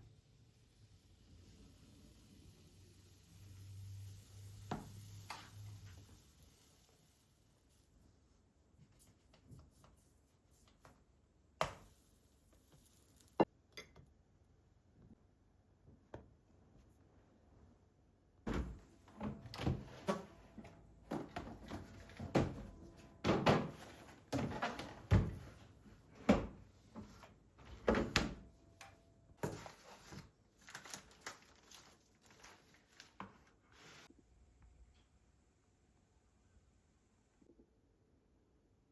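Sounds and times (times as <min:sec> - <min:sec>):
household objects knocking and thudding: 0:21.1 - 0:25.6.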